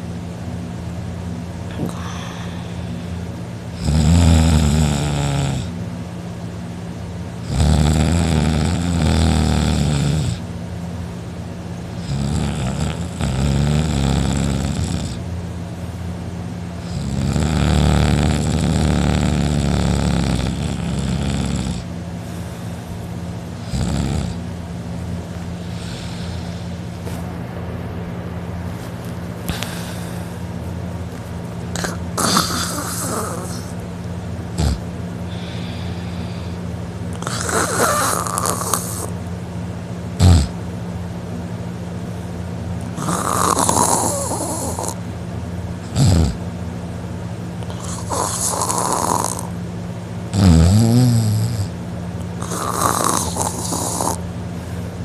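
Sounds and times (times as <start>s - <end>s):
steady low hum: 0.0s - 55.0s
man snoring loudly: 1.7s - 2.8s, 3.8s - 5.8s, 7.4s - 10.5s, 12.0s - 15.2s, 16.8s - 21.9s, 23.6s - 24.4s, 25.3s - 26.6s, 31.7s - 33.8s, 34.5s - 36.5s, 37.1s - 39.1s, 40.2s - 40.6s, 42.9s - 45.0s, 45.8s - 46.4s, 47.6s - 49.6s, 50.3s - 51.8s, 52.4s - 54.2s.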